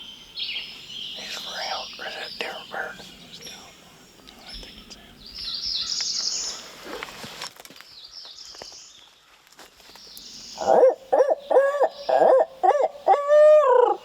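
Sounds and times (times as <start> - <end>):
songbirds chirping: 0.0 - 14.0
owl hooting: 10.6 - 14.0.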